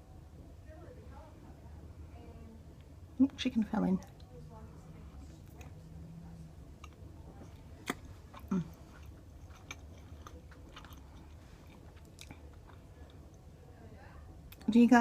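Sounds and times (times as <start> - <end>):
faint steady low hum: 0.0 - 15.0
person chewing food: 5.2 - 13.5.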